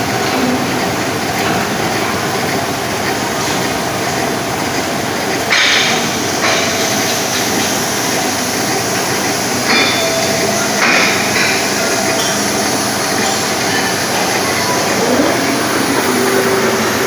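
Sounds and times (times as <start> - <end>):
metal lathe machine noise: 0.0 - 17.0.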